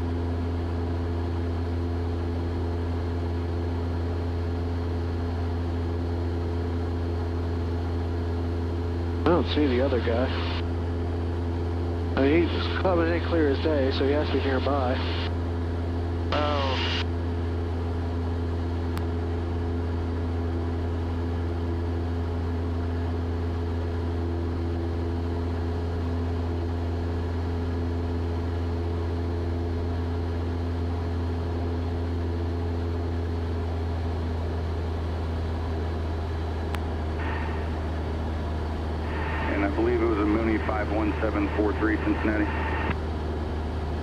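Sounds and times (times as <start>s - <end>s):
airplane engine droning in cabin: 0.0s - 44.0s.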